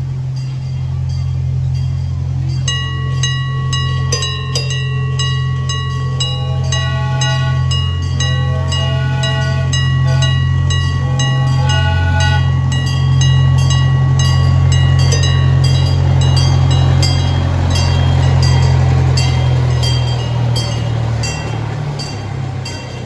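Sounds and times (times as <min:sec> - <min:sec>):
miniature train engine drone: 0:00.0 - 0:23.0
high ringing bell: 0:00.3 - 0:23.0.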